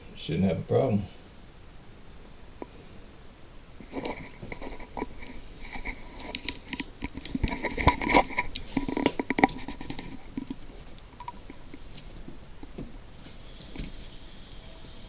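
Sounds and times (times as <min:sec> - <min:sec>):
ceramic and plastic clicks and knocks: 0:03.9 - 0:11.9.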